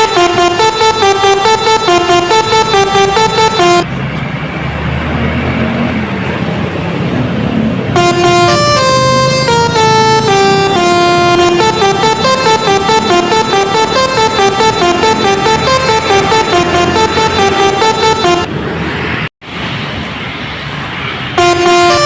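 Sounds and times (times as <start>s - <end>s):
multi-tone bus horn melody: 0.0s - 3.9s, 7.9s - 18.5s, 21.4s - 22.0s
engine and road noise: 0.0s - 22.0s.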